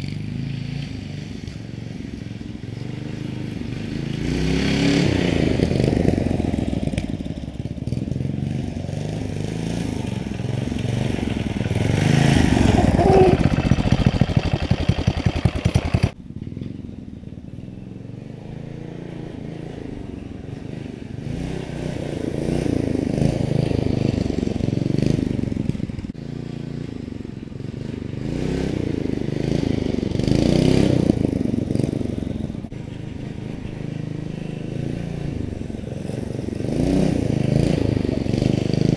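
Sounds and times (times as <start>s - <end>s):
mini bike engine revving: 0.0s - 16.9s, 17.8s - 38.9s.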